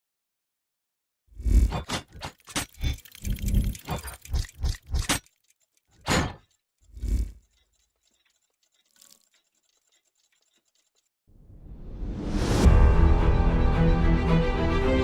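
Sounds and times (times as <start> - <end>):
music: 12.3 - 15.0.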